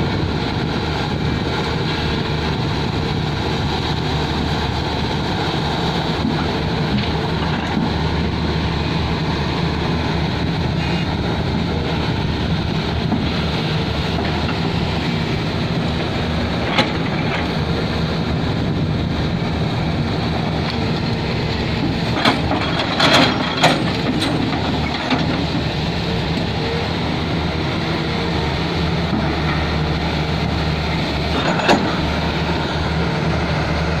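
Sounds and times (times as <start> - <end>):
excavator diesel engine running: 0.0 - 34.0.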